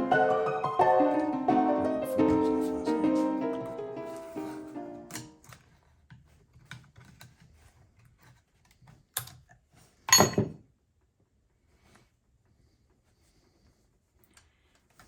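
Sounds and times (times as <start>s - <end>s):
music cue: 0.0s - 5.4s.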